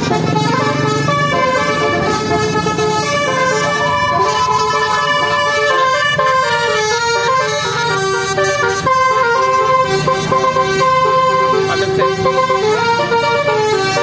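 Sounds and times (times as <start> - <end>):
bus engine rumble: 0.0 - 14.0
musical air horn: 0.0 - 14.0.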